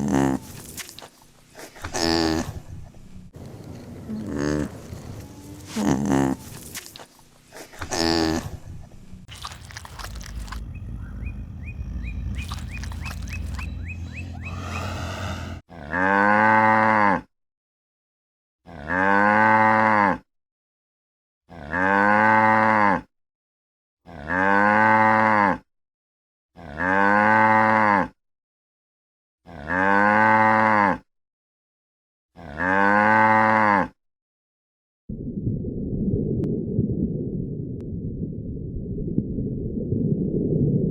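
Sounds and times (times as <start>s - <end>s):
low rumbling noise: 8.4s - 15.6s, 35.1s - 40.9s
cow mooing: 13.5s - 17.3s, 18.7s - 20.2s, 21.5s - 23.1s, 24.1s - 25.6s, 26.6s - 28.1s, 29.5s - 31.0s, 32.4s - 33.9s.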